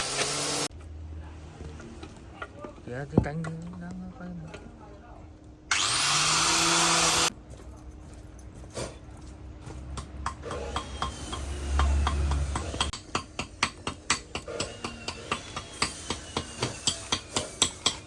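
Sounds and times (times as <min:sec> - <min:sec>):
hand tool tapping metal: 0:10.0 - 0:18.0.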